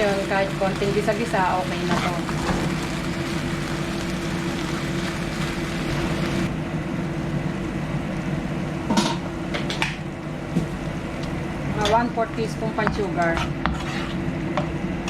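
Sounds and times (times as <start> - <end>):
food sizzling in a pan: 0.0 - 13.0.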